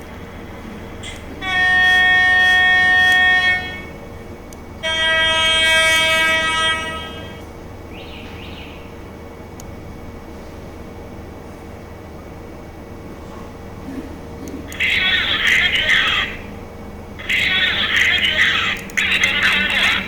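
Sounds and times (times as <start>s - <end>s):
model train horn blasts: 1.0s - 4.1s, 4.8s - 7.5s.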